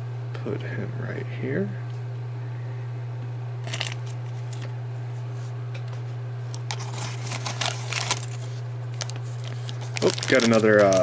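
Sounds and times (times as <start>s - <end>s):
low electrical hum: 0.0s - 11.0s
packaging crinkling and rustling: 3.6s - 4.7s, 6.6s - 11.0s.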